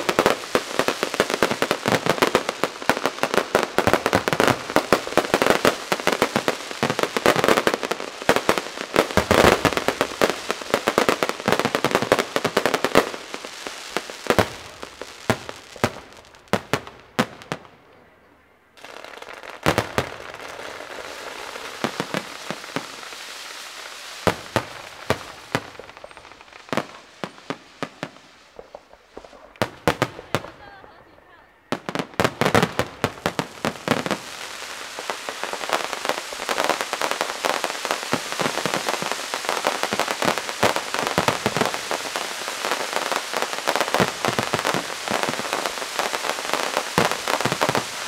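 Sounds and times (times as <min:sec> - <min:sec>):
fireworks crackling and banging: 0:00.0 - 0:18.2, 0:18.8 - 0:48.0
steady hiss: 0:18.7 - 0:30.3, 0:32.9 - 0:48.0.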